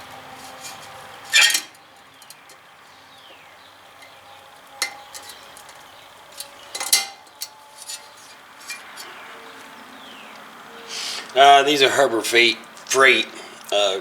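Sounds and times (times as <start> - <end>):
metal tools clinking: 0.3 - 2.6, 4.0 - 9.7.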